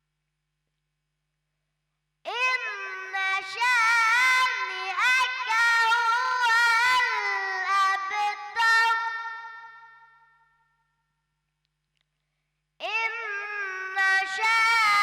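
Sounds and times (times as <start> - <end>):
boy chanting recitation: 2.3 - 10.1, 12.8 - 15.0.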